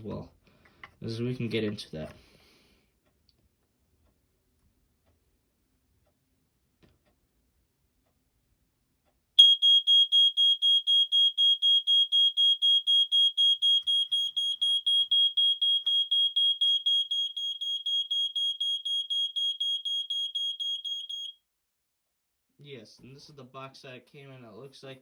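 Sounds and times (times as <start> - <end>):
smoke alarm beeping: 9.4 - 21.4.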